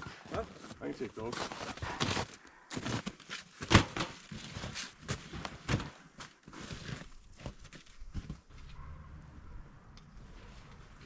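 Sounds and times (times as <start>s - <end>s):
footsteps in snow: 0.0s - 3.7s, 4.3s - 9.0s.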